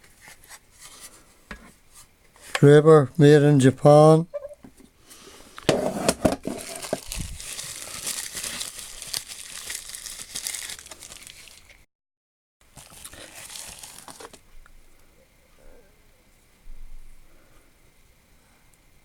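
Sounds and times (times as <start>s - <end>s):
packaging crinkling and rustling: 6.2s - 11.8s, 12.6s - 14.5s.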